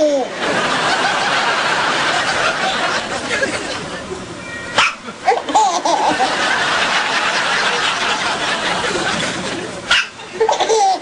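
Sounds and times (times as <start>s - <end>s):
group laughter: 0.0s - 4.3s, 5.0s - 11.0s
sharp hiccup: 4.8s - 5.0s.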